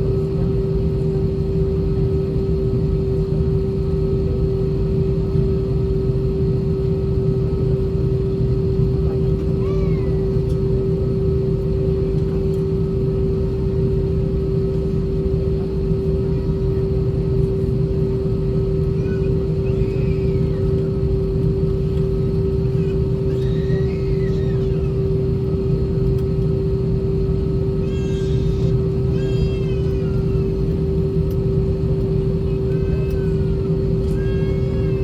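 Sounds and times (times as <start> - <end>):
aircraft cabin engine drone: 0.0 - 35.0.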